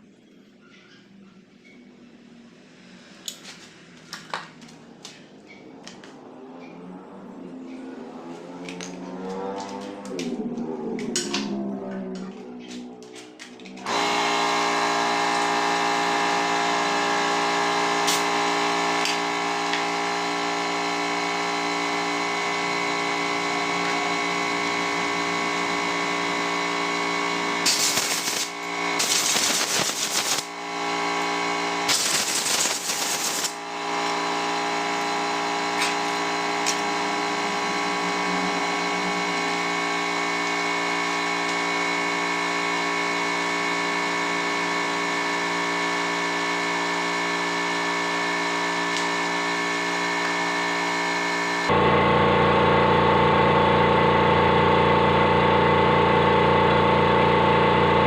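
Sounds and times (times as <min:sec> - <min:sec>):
steady mechanical hum: 0:00.0 - 0:58.0
loud hiss bursts: 0:27.6 - 0:30.5, 0:31.9 - 0:33.6.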